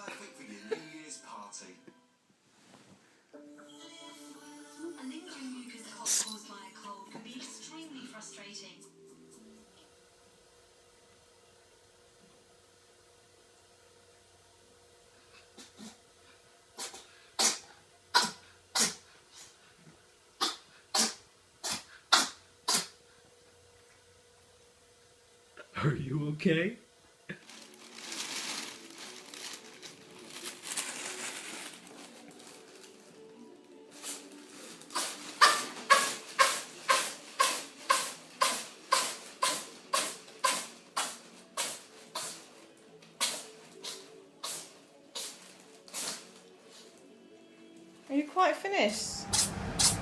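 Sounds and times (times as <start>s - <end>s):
cat sneezing: 6.0s - 6.3s, 16.8s - 19.5s, 20.4s - 23.0s, 34.9s - 42.5s, 43.2s - 46.3s.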